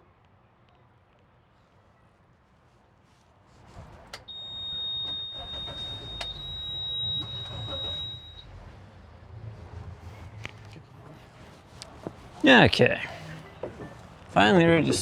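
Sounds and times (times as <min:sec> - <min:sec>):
high-pitched electronic beep: 0:04.3 - 0:08.5.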